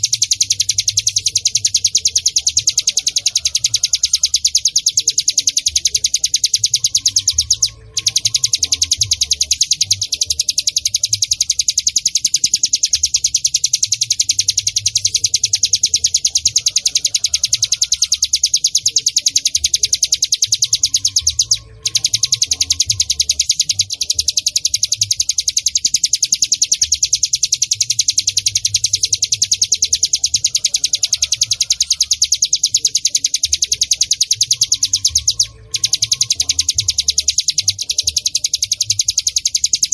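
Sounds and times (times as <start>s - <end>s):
bird chattering trill: 0.0s - 39.9s.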